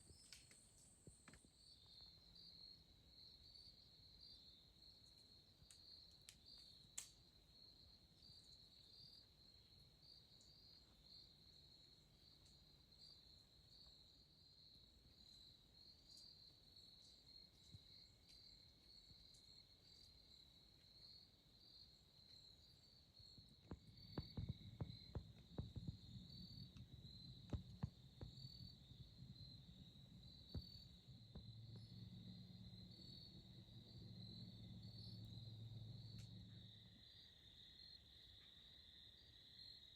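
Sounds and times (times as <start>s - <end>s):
crickets trilling: 0.0s - 39.9s
low steady hum: 23.7s - 37.3s.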